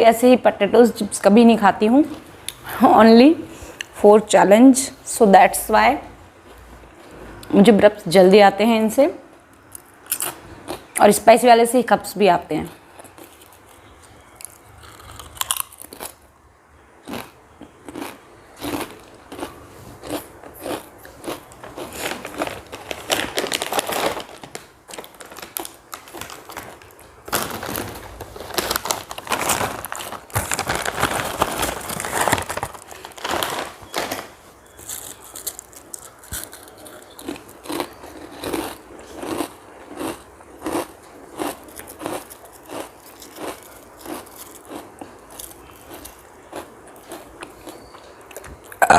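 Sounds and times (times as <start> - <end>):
person crunching potato chips: 9.7 - 10.9, 13.0 - 16.2, 17.0 - 48.9.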